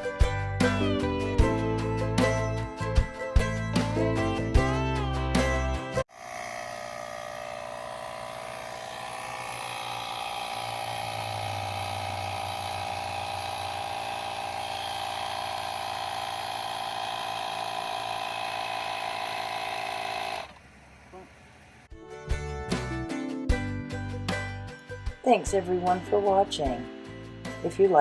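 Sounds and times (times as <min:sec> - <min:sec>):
air compressor humming: 0:06.1 - 0:21.9.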